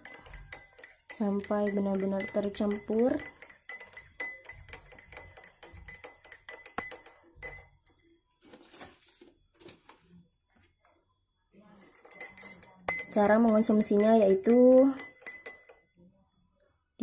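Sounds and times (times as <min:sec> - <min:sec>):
spoon clinking in a glass: 0:00.0 - 0:08.1, 0:11.8 - 0:16.0.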